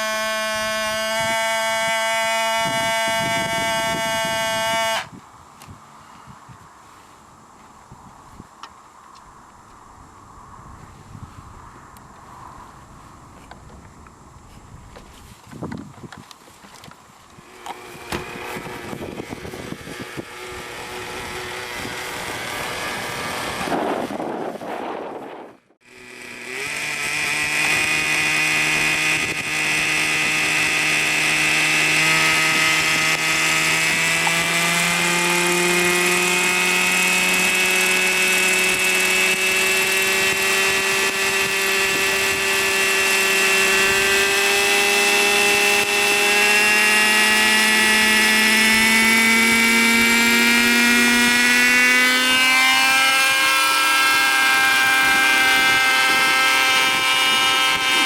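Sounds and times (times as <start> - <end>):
model helicopter engine running: 0.0 - 5.1, 17.3 - 58.0.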